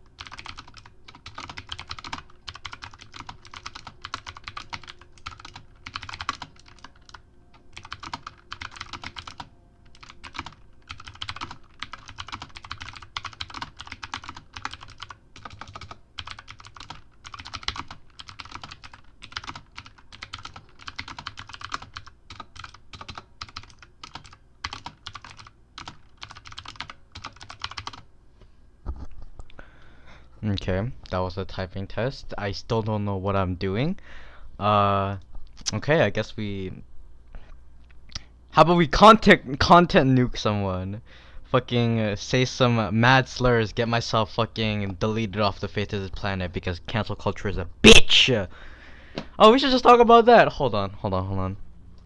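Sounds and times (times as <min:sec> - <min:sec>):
fast keyboard typing: 0:00.1 - 0:28.1.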